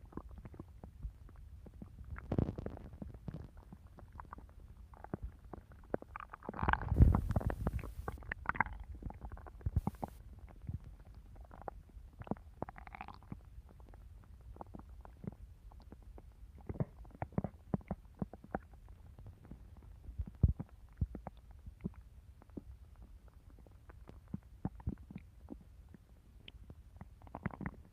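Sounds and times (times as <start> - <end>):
stomach growling: 0.0 - 27.9.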